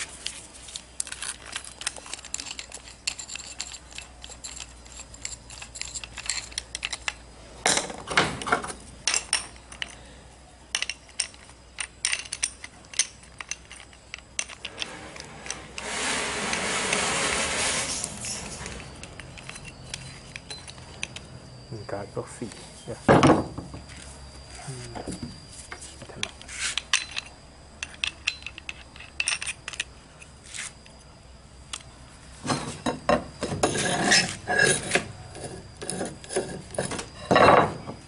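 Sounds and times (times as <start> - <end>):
metal tools clinking: 1.0 - 10.0, 10.7 - 15.8, 17.9 - 21.3, 25.7 - 30.9, 31.7 - 38.0.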